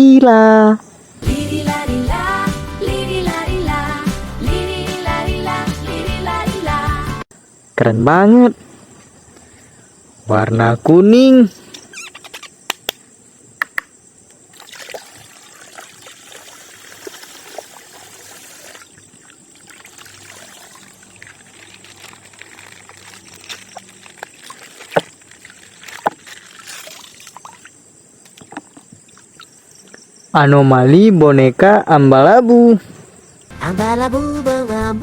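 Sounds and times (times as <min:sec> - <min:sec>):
water pouring and trickling: 0:14.5 - 0:30.0
plastic crackling: 0:20.9 - 0:27.3.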